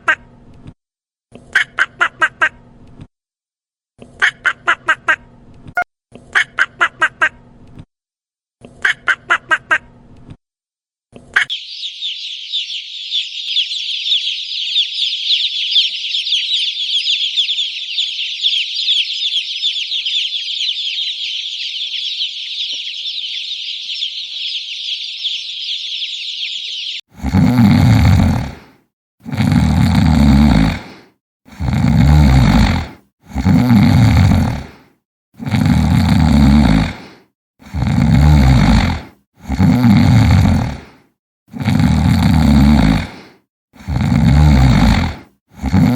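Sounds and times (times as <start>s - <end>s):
chicks cheeping: 11.4s - 27.0s
deep rasping animal call: 27.1s - 28.6s, 31.5s - 34.6s, 37.6s - 40.8s, 43.8s - 45.9s.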